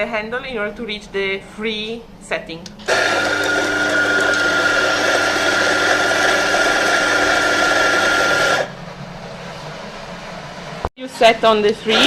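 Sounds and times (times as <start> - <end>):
coffee grinder whining: 2.9 - 8.7.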